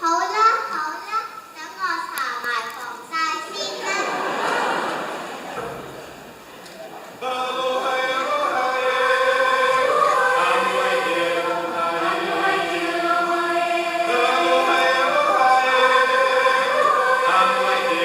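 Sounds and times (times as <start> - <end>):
children singing in unison: 7.2 - 18.0.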